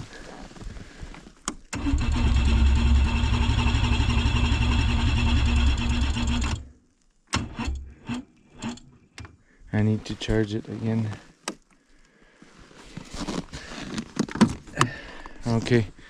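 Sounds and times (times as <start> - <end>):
electric starter cranking engine: 1.7 - 6.7, 7.4 - 8.9.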